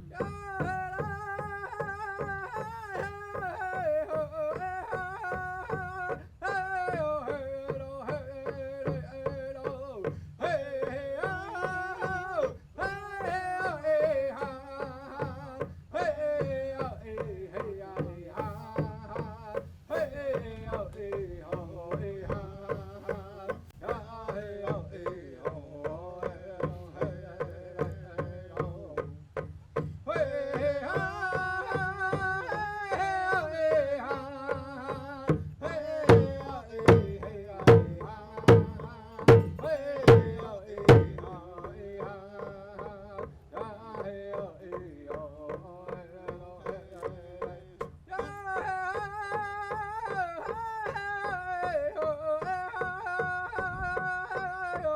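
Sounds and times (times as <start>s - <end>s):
hand drum beat: 0.0s - 54.9s
man singing: 0.0s - 54.9s
loud drum strikes: 35.3s - 41.7s.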